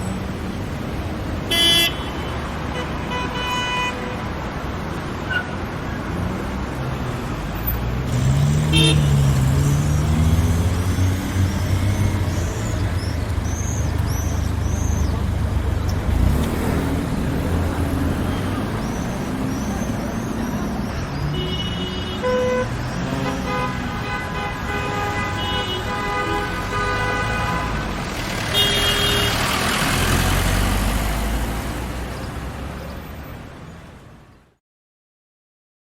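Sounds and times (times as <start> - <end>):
traffic rumble: 0.0 - 34.5
car horns honking: 1.4 - 4.3, 8.2 - 12.3, 21.2 - 30.3.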